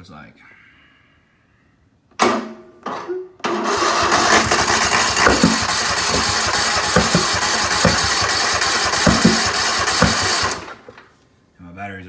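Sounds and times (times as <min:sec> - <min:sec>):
mower engine cranking: 0:03.4 - 0:11.1
loud muffler pops: 0:04.0 - 0:11.0.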